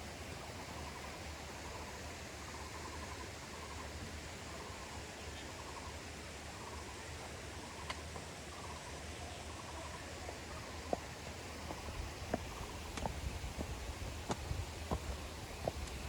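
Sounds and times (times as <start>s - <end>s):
steady hiss: 0.0s - 16.0s
faint clicks: 7.8s - 8.3s.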